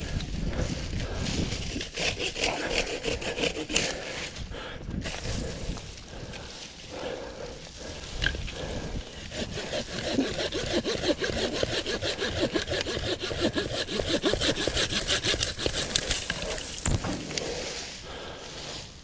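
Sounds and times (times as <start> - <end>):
handsaw cutting stem: 1.5 - 4.2, 8.5 - 16.9.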